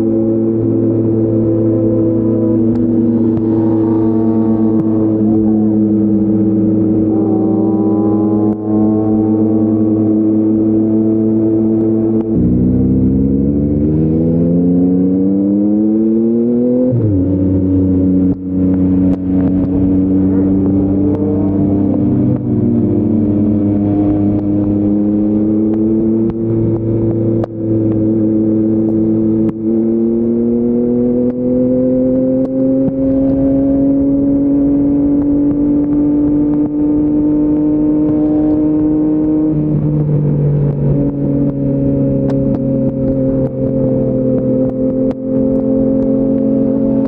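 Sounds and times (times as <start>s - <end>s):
motorcycle engine and exhaust: 0.0s - 47.0s.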